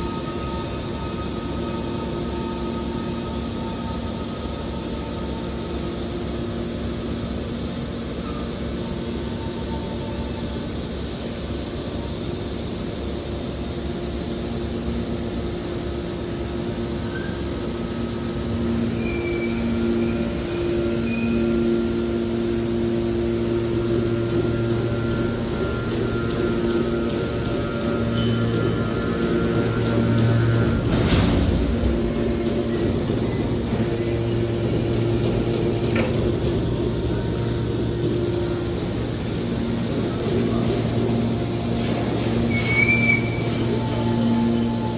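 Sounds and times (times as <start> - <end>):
hydraulic baler rumble and hum: 0.0 - 44.9
faint high squeals: 17.0 - 35.1, 41.3 - 44.9.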